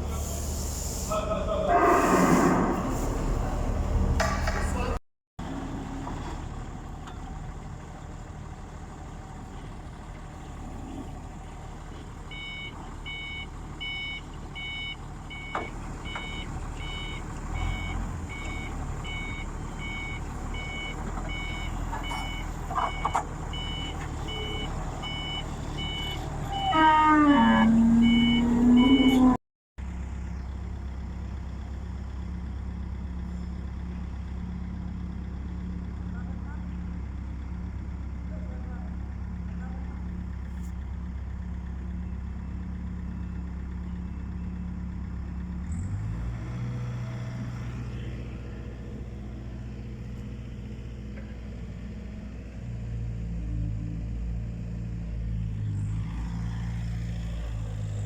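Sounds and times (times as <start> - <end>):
reversing alarm beeping: 12.3 - 29.4.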